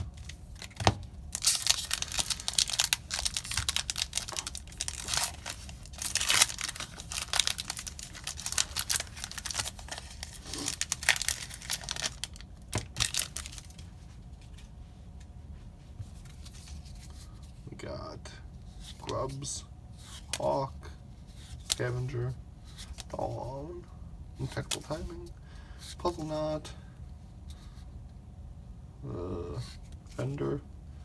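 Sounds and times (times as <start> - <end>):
cards being handled: 0.0 - 14.8
foil wrapper tearing and crinkling: 0.6 - 13.8.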